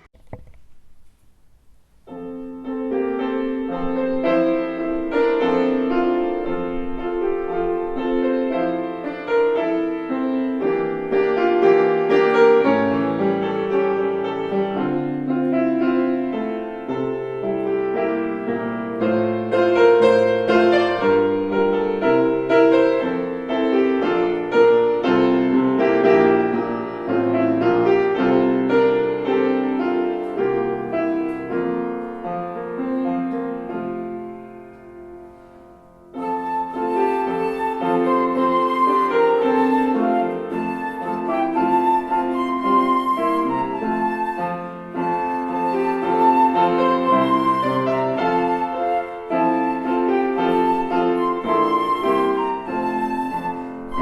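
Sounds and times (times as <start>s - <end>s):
calm solo piano piece: 0.0s - 54.0s.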